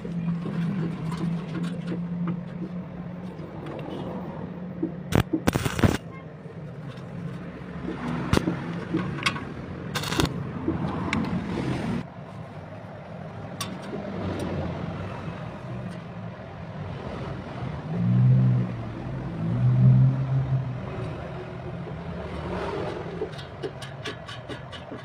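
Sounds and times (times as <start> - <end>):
arc welder humming: 5.1 - 6.0, 10.0 - 10.4
sizzling welding arc: 5.1 - 6.0, 10.0 - 10.3
sharp cracks: 5.1 - 6.1.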